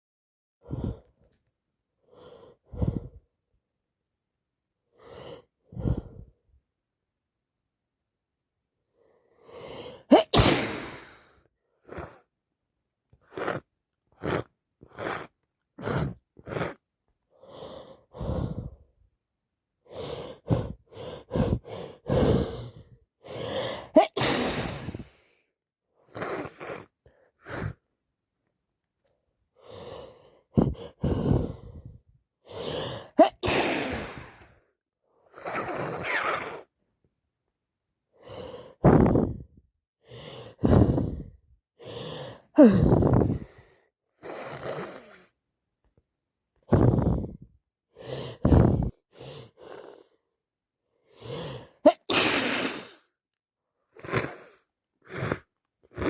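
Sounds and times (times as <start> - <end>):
gasping breath: 0.6 - 1.4, 2.0 - 3.4, 4.9 - 6.4, 8.9 - 12.3, 13.2 - 19.0, 19.8 - 27.9, 29.5 - 36.7, 38.1 - 45.4, 46.6 - 50.3, 50.9 - 53.2, 53.8 - 56.0
woman sniffing: 9.6 - 12.3, 13.2 - 16.8, 19.9 - 25.2, 26.0 - 27.9, 29.6 - 34.6, 35.3 - 36.7, 40.2 - 45.4, 51.2 - 53.1, 53.9 - 56.0
woman sneezing: 10.1 - 11.1, 24.0 - 25.0, 33.2 - 34.2, 51.9 - 53.0.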